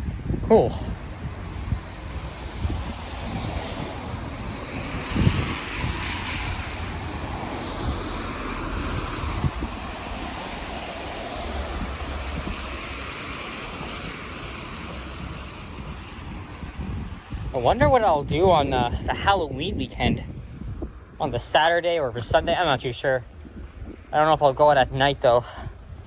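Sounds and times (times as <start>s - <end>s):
wind thumps on microphone: 0.0s - 21.5s, 22.1s - 24.5s, 25.6s - 26.0s
tyre hiss on wet street: 1.4s - 17.4s.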